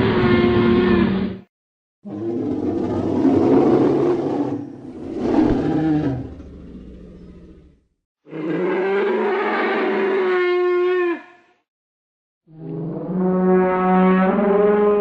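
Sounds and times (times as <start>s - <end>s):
roar: 2.0s - 11.4s.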